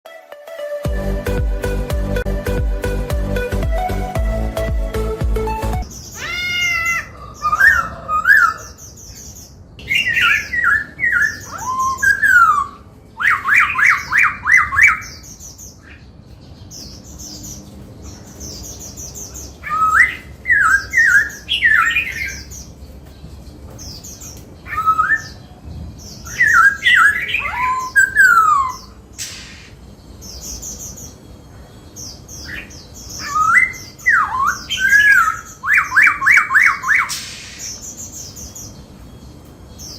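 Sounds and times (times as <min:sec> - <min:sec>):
bird whistled song: 0:09.8 - 0:15.9, 0:19.2 - 0:22.6, 0:24.2 - 0:29.8, 0:32.4 - 0:38.8
bird trills: 0:26.2 - 0:38.8.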